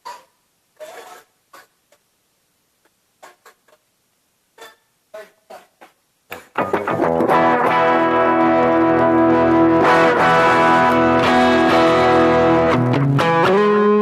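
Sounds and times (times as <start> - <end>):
electric guitar strummed chords: 6.6 - 14.0.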